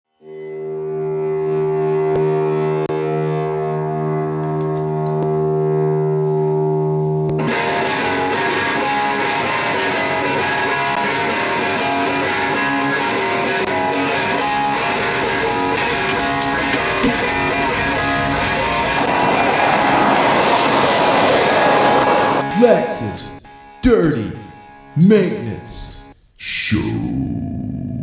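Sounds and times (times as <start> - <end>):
electric guitar chord: 0.2 - 16.1.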